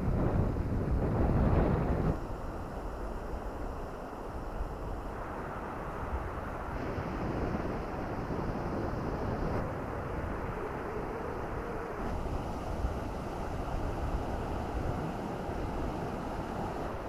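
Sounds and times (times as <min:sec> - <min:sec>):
strong wind on microphone: 0:00.0 - 0:17.0
waves washing on shore: 0:02.2 - 0:17.0.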